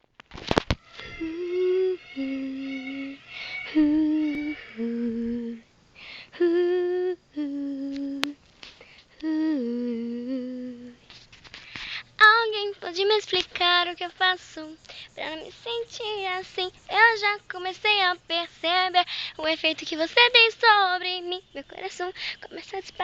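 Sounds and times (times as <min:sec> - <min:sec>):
woman humming a slow melody: 0:01.0 - 0:05.7, 0:06.3 - 0:08.4, 0:09.1 - 0:11.0
short breaths: 0:03.2 - 0:03.7, 0:05.9 - 0:06.4, 0:11.5 - 0:12.2, 0:14.8 - 0:15.2, 0:19.1 - 0:19.4, 0:22.1 - 0:22.4.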